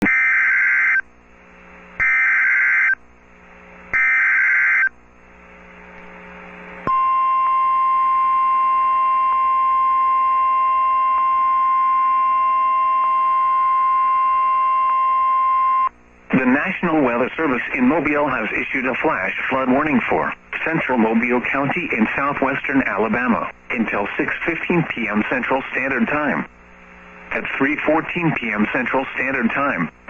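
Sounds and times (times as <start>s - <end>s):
steady attention tone: 6.8s - 18.7s.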